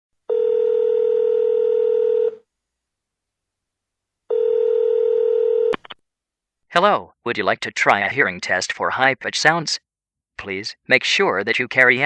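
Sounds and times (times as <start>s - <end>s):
telephone ringback tone: 0.3s - 2.4s, 4.3s - 5.8s.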